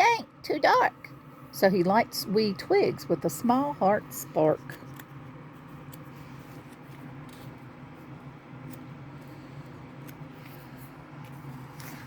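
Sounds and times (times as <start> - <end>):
steady low hum: 0.0 - 12.0
paper pages rustling: 4.7 - 12.0
light clicks of pages: 4.8 - 12.0.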